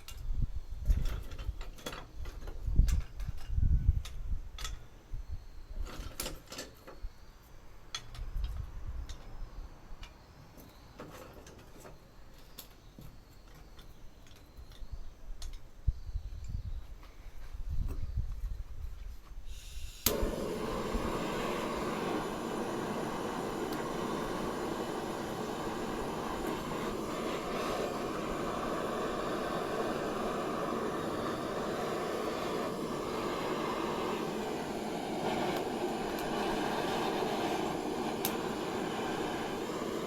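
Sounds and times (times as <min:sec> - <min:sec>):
steady torch flame noise: 0:14.0 - 0:40.0
gas torch igniter click: 0:19.5 - 0:40.0.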